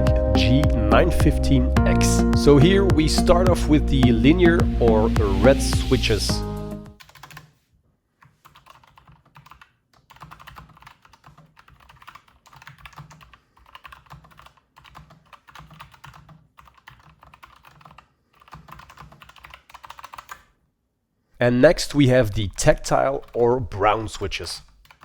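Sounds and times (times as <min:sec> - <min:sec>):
mechanical keyboard typing: 0:07.0 - 0:07.6, 0:08.4 - 0:20.5.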